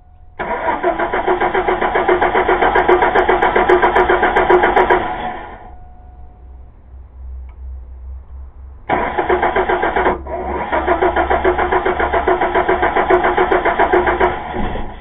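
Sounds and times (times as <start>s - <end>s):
car engine cranking: 0.0s - 5.8s, 8.8s - 15.0s.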